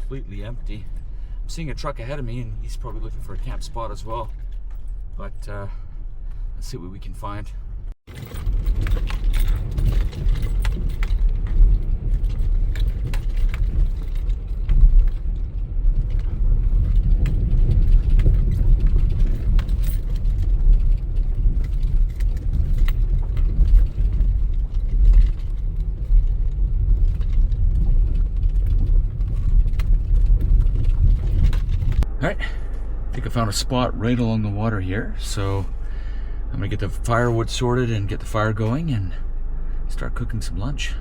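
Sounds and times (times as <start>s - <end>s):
vehicle driving on gravel: 0.0s - 41.0s
small clicks and rattles: 8.1s - 32.1s.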